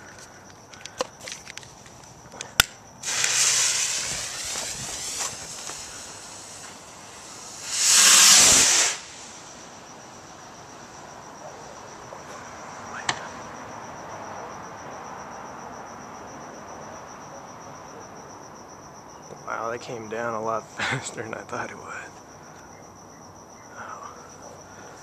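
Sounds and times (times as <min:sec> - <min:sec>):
crickets chirping: 0:00.0 - 0:25.0
firework rocket hiss: 0:03.0 - 0:10.3.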